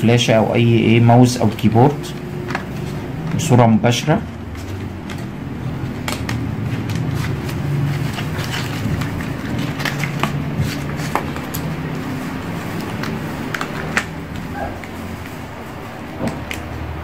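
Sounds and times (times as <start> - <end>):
low background hum: 0.0 - 17.0
clicks and taps of plastic packaging: 4.8 - 12.0, 12.7 - 15.4, 16.2 - 16.8.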